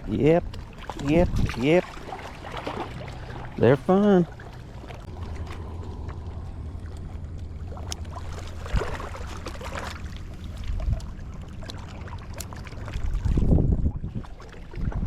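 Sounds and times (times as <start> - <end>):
wind buffeting microphone: 0.0 - 3.8, 12.8 - 15.0
water lapping and splashing: 0.0 - 15.0.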